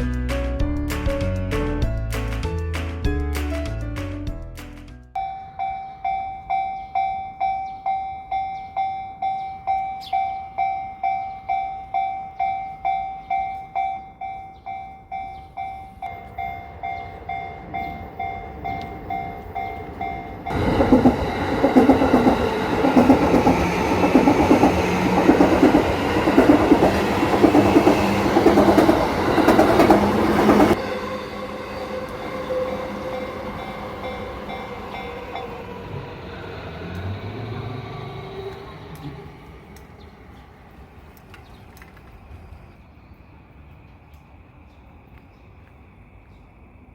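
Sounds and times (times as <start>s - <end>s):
level crossing warning bell: 5.2s - 36.1s
train wheels clattering over rail joints: 20.5s - 30.8s.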